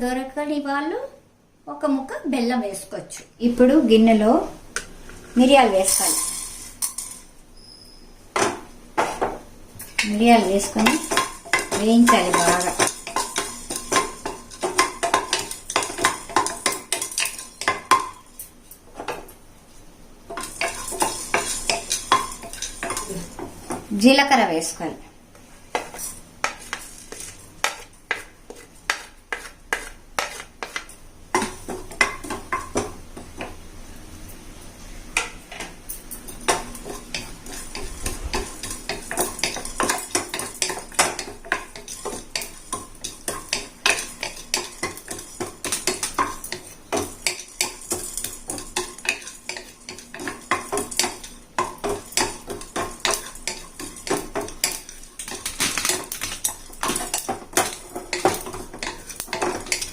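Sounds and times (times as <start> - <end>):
spoon scraping in a pan: 4.8 - 8.2, 9.0 - 18.3, 20.3 - 23.4, 25.4 - 32.8, 36.3 - 59.9
spoon tapping a pan: 8.4 - 18.3, 20.3 - 23.8, 27.6 - 33.6, 35.2 - 59.9.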